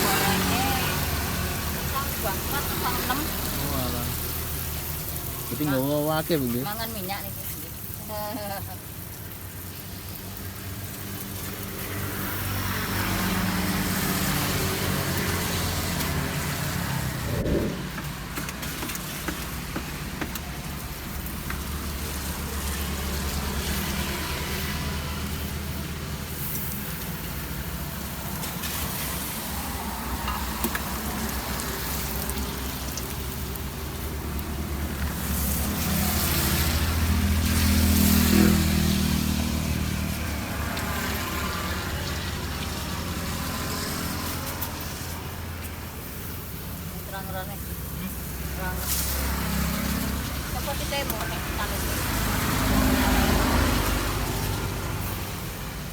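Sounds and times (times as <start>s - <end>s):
batter sizzling in hot oil: 0.0s - 55.9s
traffic passing: 0.0s - 55.9s.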